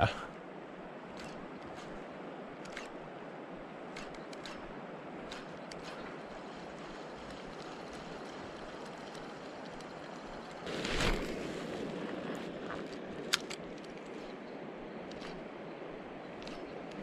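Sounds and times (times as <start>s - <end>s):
sharp click: 2.6s - 3.0s, 4.0s - 4.7s.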